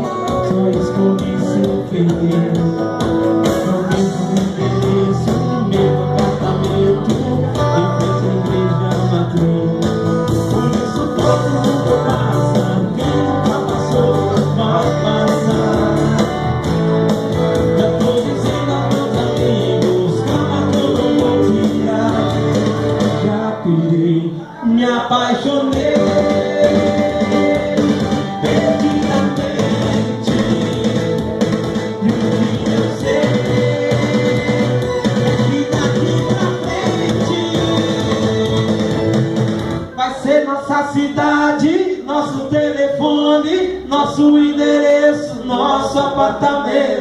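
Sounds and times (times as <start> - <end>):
person singing: 0.0 - 16.9, 17.5 - 47.0
steady drum beat: 0.0 - 23.3, 25.6 - 39.9
bass: 0.0 - 47.0
guitar: 0.0 - 47.0.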